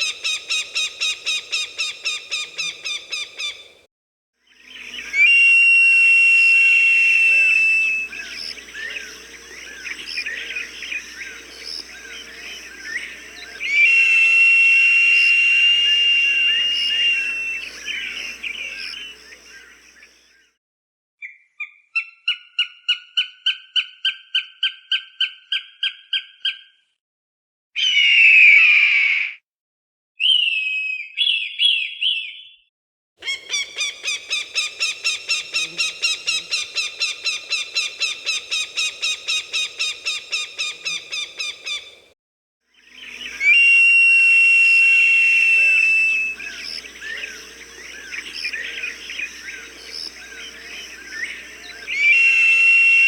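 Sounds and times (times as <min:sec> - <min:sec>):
small birds chattering: 0:07.3 - 0:14.1, 0:15.2 - 0:20.0, 0:33.2 - 0:42.1, 0:45.6 - 0:52.7
hawk screaming: 0:13.6 - 0:18.4, 0:43.4 - 0:47.4.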